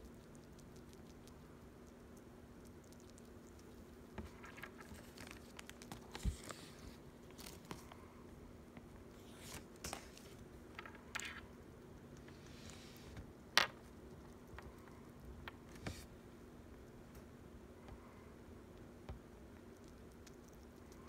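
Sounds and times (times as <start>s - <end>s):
small animal nibbling and crunching: 0.0s - 8.1s, 18.7s - 21.0s.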